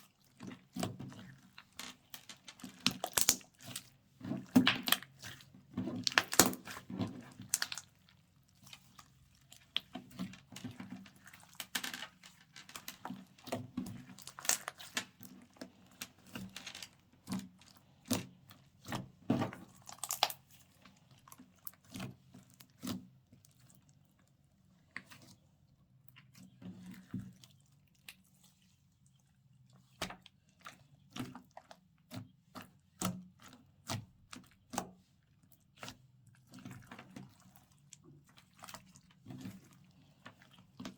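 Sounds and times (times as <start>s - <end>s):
slime squishing by hand: 0.0s - 24.0s, 35.5s - 40.9s.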